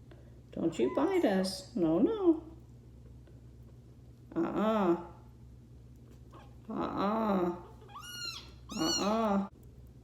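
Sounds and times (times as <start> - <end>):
kitten meowing: 7.8 - 9.5.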